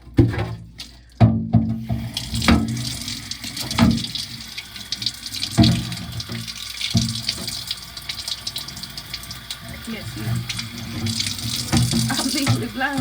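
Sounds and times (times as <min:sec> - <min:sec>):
tap water running into sink: 0:00.0 - 0:13.0
knocks of things in basin: 0:11.4 - 0:13.0.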